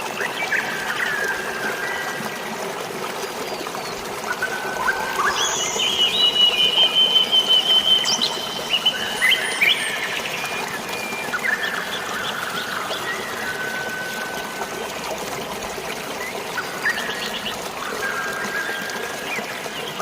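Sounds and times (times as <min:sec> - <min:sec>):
trickling water: 0:00.0 - 0:20.0
birds singing: 0:03.4 - 0:14.2.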